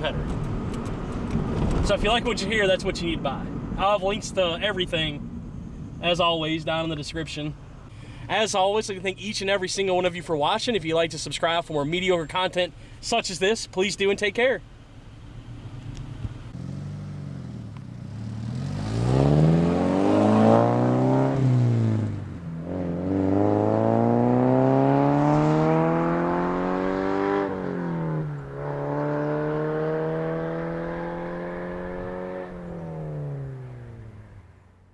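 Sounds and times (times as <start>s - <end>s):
car engine accelerating: 14.9s - 34.8s.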